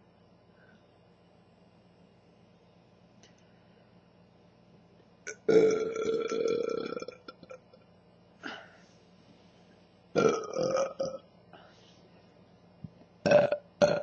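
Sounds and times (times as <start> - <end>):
woman burping: 10.2 - 11.2, 13.3 - 14.0.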